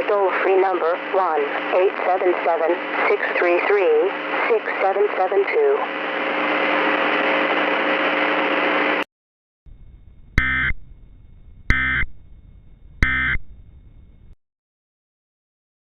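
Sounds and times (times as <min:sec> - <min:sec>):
static hiss with faint tones: 0:09.7 - 0:14.4.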